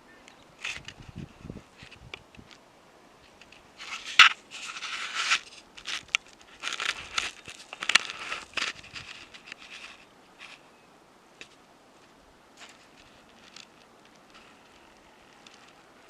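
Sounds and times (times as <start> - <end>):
snow crunching: 11.5 - 16.0.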